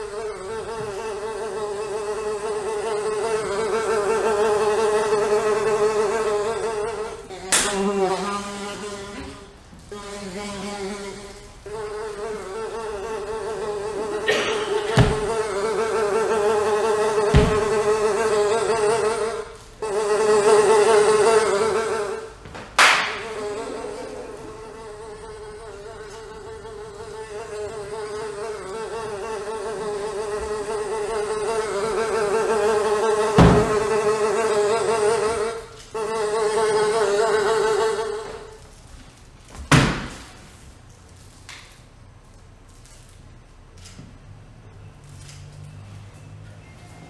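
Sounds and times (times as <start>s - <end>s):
high insect-like buzz: 0.0s - 40.0s
sharp smacks: 7.5s - 7.9s, 14.3s - 15.6s, 22.5s - 23.5s.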